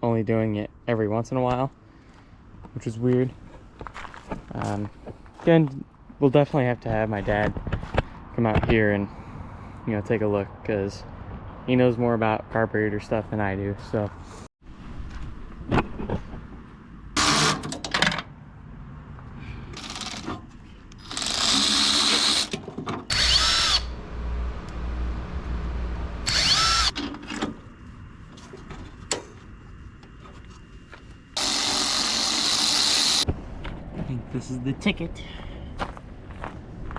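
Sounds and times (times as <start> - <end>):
power drill motor whining: 17.2 - 17.6, 19.8 - 20.3, 21.0 - 24.0, 26.2 - 27.0, 31.4 - 33.2.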